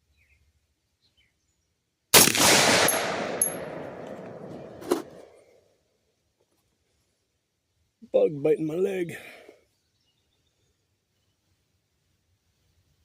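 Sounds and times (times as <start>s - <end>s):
rifle shot with echo: 2.1s - 5.2s
high metallic pings: 2.9s - 3.8s.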